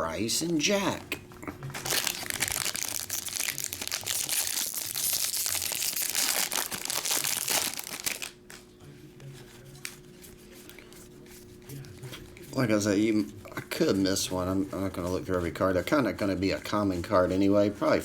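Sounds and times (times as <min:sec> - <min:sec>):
foil wrapper crinkling and tearing: 0:01.8 - 0:08.4.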